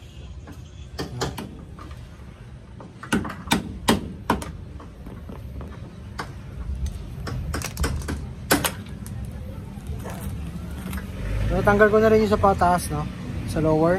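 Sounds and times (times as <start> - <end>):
hammer strikes on metal: 3.0 - 4.6.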